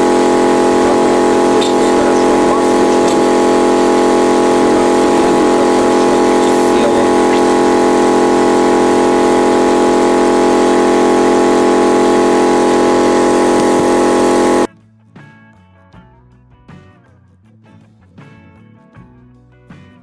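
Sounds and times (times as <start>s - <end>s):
motorcycle engine idling: 0.0s - 14.7s.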